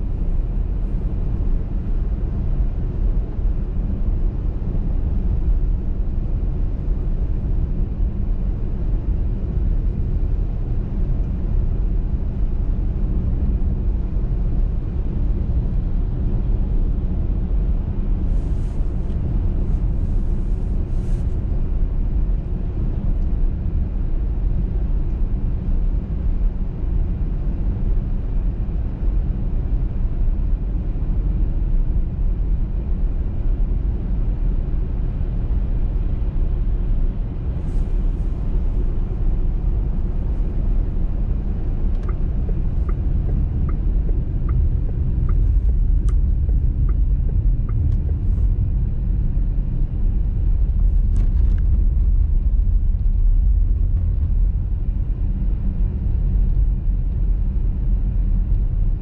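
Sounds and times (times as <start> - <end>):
car driving rumble: 0.0 - 59.0
turn signal ticking: 41.9 - 48.3.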